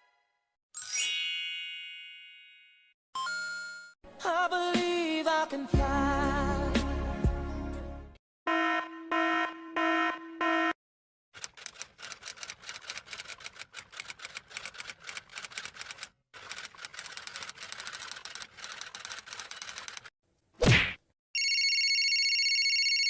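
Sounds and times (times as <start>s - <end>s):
rapid key clicks: 11.4s - 20.1s.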